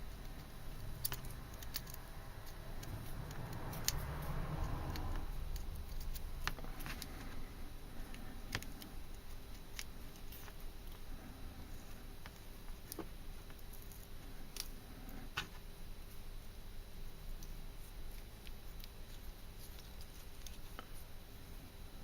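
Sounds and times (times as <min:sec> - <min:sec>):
small metal clicks and scrapes: 0:00.2 - 0:07.4.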